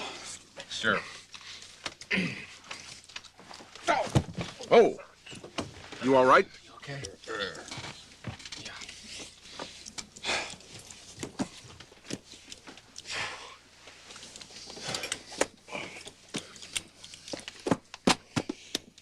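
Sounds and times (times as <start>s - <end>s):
person breathing: 9.0s - 10.9s, 13.0s - 13.6s.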